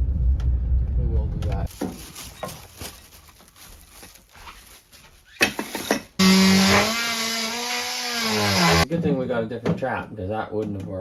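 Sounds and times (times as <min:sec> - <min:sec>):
power drill whining: 0:06.2 - 0:08.9.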